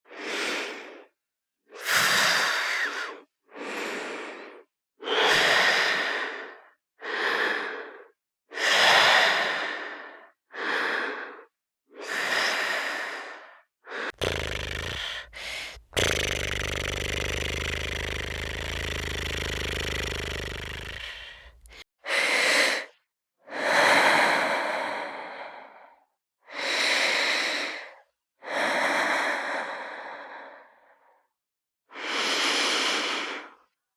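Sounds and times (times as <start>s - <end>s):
person breathing and sighing: 14.1s - 21.8s.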